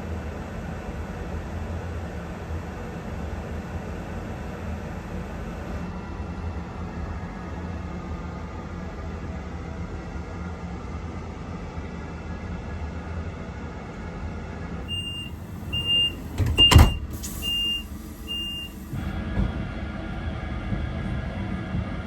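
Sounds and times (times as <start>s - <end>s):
short high beeps: 14.9s - 18.9s
train running rumble: 14.9s - 22.0s.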